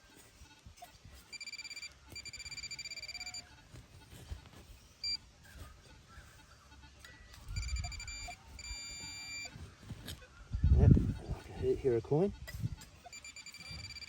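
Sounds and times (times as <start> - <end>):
metal detector tone: 0.1 - 5.6, 6.8 - 9.6, 12.8 - 14.0.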